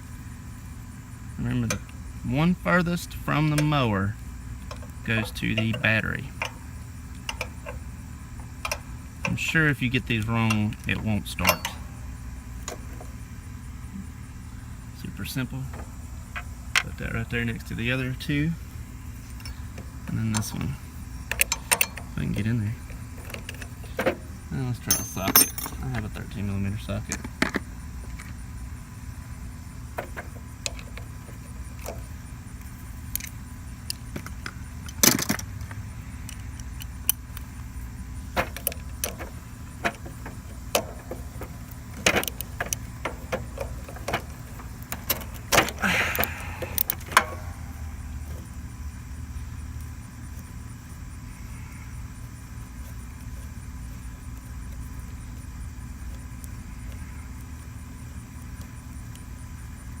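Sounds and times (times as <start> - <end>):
low background rumble: 0.0 - 60.0
socket wrench clicking on nut: 38.4 - 47.5.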